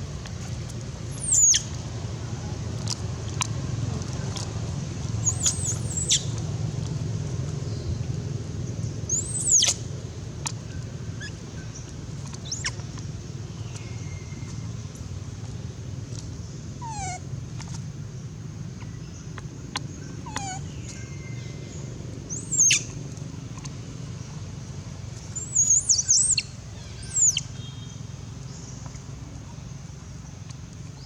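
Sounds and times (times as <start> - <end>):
baby monkey squealing cries: 1.2 - 1.6, 16.8 - 17.2, 20.2 - 20.6.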